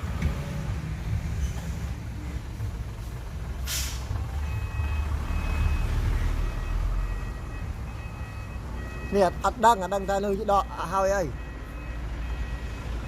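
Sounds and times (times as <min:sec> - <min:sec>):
diesel engine running: 0:00.0 - 0:13.0
air hiss: 0:03.6 - 0:04.1
reversing beeper: 0:04.4 - 0:13.0.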